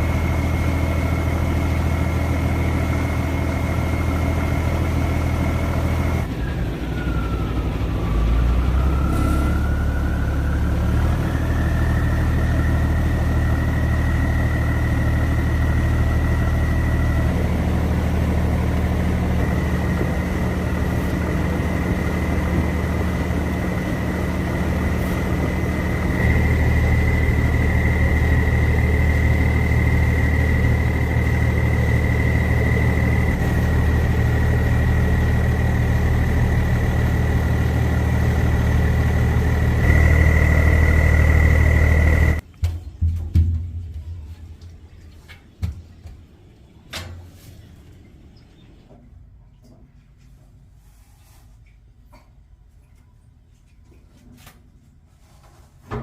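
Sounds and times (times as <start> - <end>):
boat engine running: 0.0 - 42.4.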